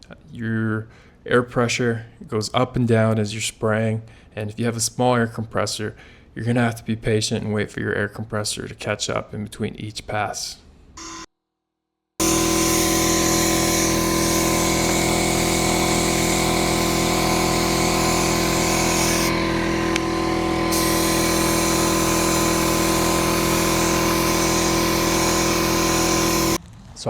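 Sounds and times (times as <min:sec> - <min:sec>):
air compressor running: 0:12.2 - 0:26.6
paint spray gun hissing: 0:12.2 - 0:26.6.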